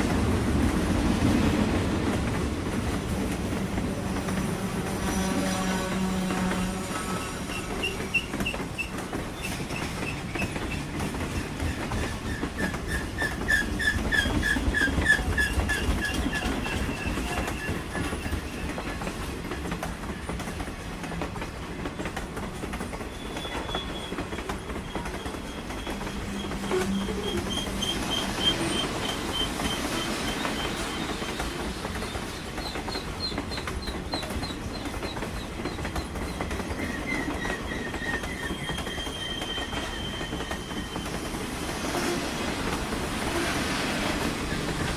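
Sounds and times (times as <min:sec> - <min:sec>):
low train rumble: 0:00.0 - 0:44.9
train wheels clacking over rail joints: 0:00.0 - 0:44.9
high-pitched wheel squeal: 0:36.8 - 0:41.2.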